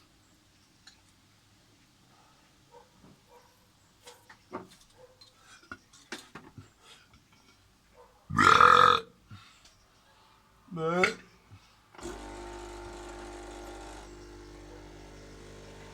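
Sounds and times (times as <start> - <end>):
person burping loudly: 8.3 - 9.1.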